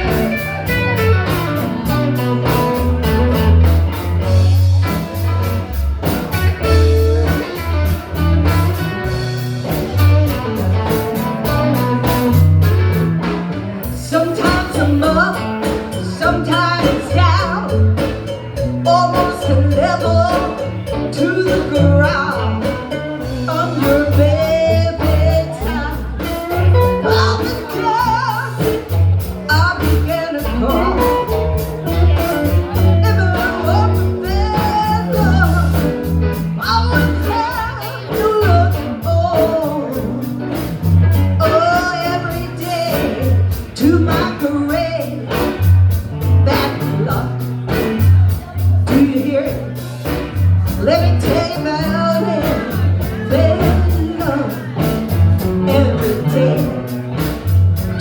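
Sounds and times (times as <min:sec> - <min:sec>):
wavering lead melody: 0:00.0 - 0:28.9
live blues band playing: 0:00.0 - 0:58.0.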